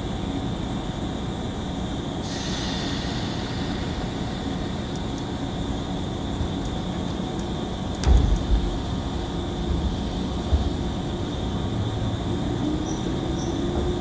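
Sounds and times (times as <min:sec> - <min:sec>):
high hiss: 0:02.2 - 0:06.4
train wheels rumbling on rails: 0:02.2 - 0:14.0.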